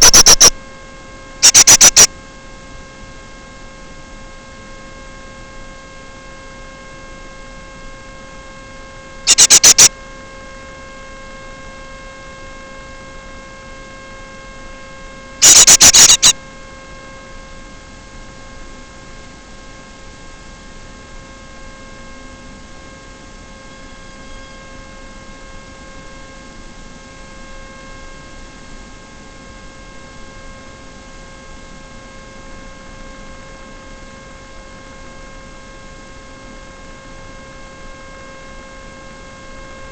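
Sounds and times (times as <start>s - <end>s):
electrical hum: 0.0s - 0.5s, 1.4s - 2.1s, 9.3s - 9.9s, 15.4s - 16.3s
loud rapid crackling bursts: 0.0s - 0.5s, 1.4s - 2.1s, 9.3s - 9.9s, 15.4s - 16.3s.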